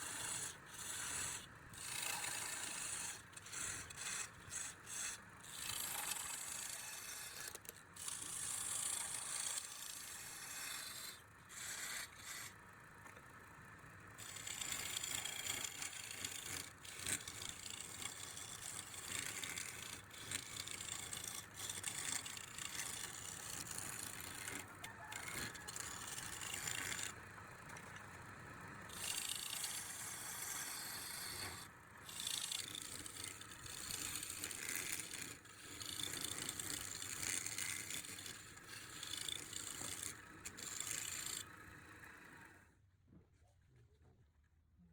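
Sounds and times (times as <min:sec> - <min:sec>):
tool scraping wood: 0:00.0 - 0:12.6, 0:14.2 - 0:28.2, 0:28.9 - 0:42.5.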